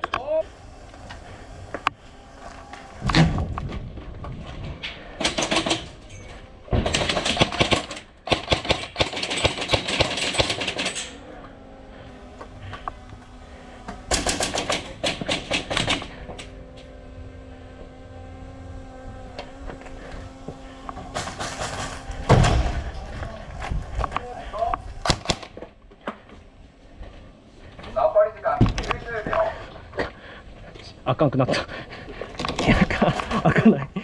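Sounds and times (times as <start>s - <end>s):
airsoft guns firing bursts: 6.8s - 11.2s, 14.1s - 16.2s
heavy thump: 21.1s - 23.0s.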